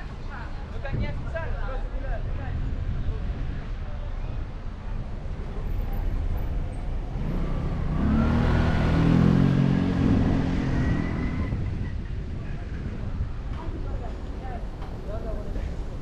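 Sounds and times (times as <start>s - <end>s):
low road noise: 0.0s - 16.0s
car engine passing: 5.4s - 11.8s.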